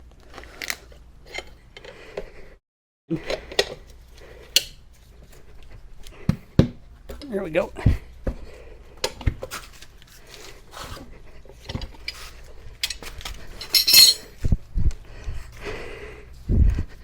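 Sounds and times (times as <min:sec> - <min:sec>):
metal tools clinking on wheel rim: 0:12.8 - 0:14.3.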